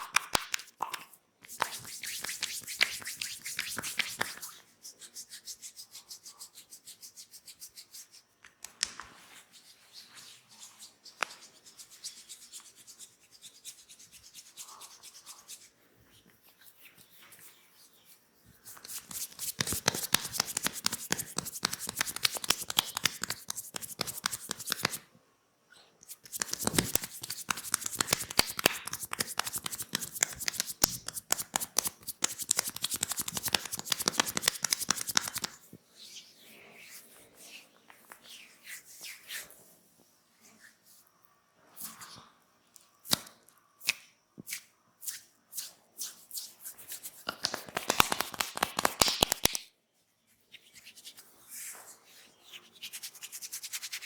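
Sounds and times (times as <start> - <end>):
hands rubbing over skin: 0.0 - 25.0, 26.0 - 35.6, 44.5 - 49.6, 52.4 - 54.0
rapid hand tapping: 19.0 - 25.0, 26.2 - 35.5, 47.3 - 49.6.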